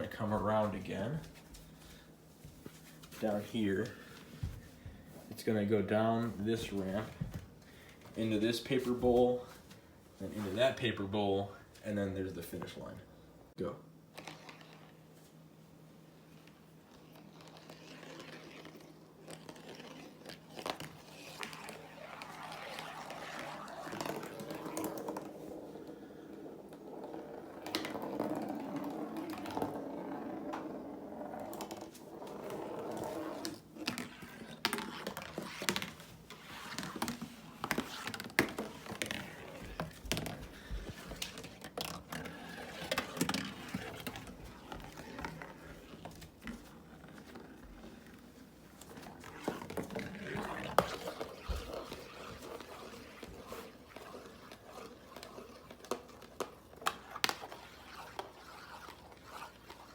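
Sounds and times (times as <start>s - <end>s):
marble rolling on track: 17.0s - 48.2s, 48.8s - 59.9s.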